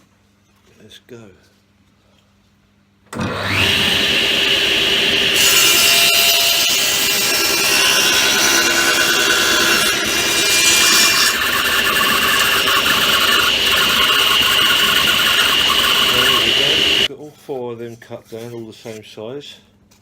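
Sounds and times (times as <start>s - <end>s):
table saw cutting timber: 3.2s - 17.1s.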